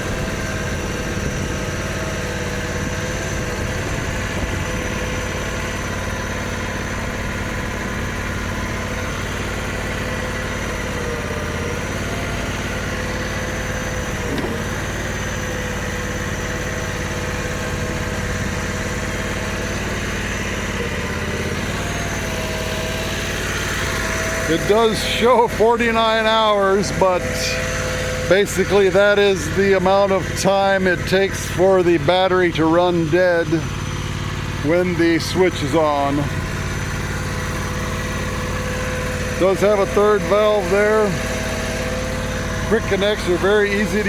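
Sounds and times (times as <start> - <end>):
small engine running steadily: 0.0 - 44.0.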